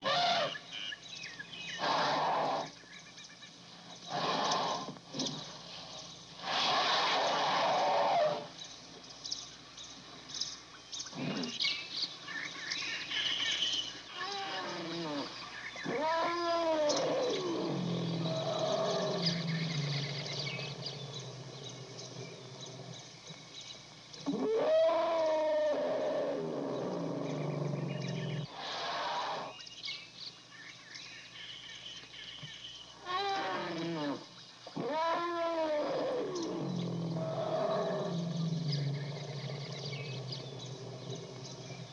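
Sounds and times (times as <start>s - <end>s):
elephant trumpeting: 0.0s - 0.6s, 1.8s - 2.8s, 4.1s - 4.9s, 6.4s - 8.5s, 14.2s - 20.8s, 24.2s - 29.5s, 33.0s - 34.2s
elephant low rumbles: 4.0s - 8.5s, 14.3s - 29.4s, 33.0s - 41.9s
elephant harsh blasts: 4.1s - 4.9s, 6.4s - 8.5s.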